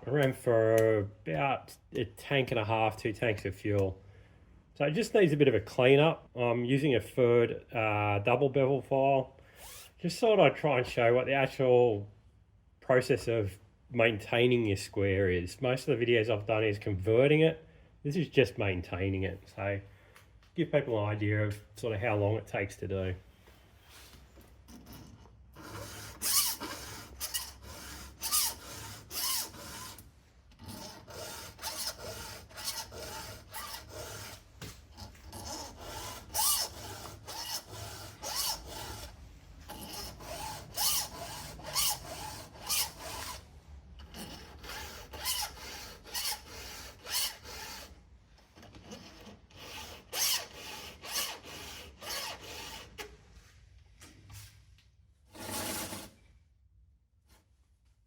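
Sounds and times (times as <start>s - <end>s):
hand file rasping on saw chain: 24.7s - 30.0s, 30.6s - 34.4s, 35.0s - 43.4s, 44.0s - 48.0s, 48.8s - 53.0s.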